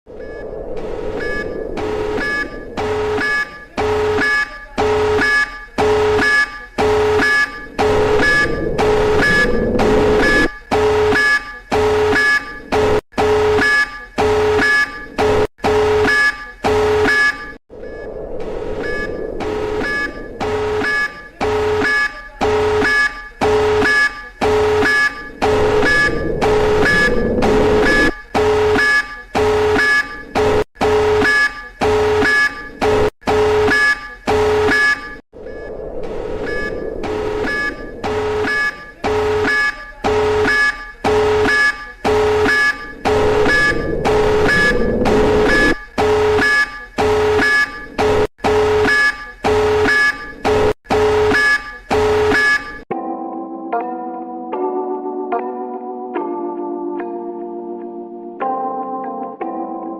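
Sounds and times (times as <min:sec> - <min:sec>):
steady droning noise: 0:00.1 - 0:04.0, 0:35.4 - 0:39.4
electronic alarm beeping: 0:00.1 - 0:52.9.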